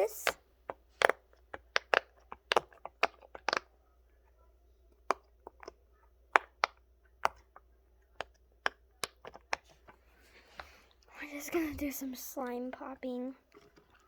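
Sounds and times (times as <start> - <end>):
fidget toy bubbles popping: 0.0 - 3.8, 4.9 - 10.0.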